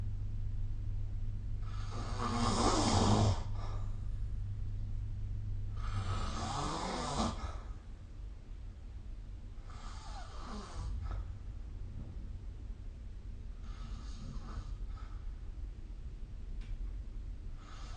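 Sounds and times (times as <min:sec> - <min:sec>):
person snoring: 0:01.6 - 0:03.9, 0:05.7 - 0:07.8, 0:09.7 - 0:11.2.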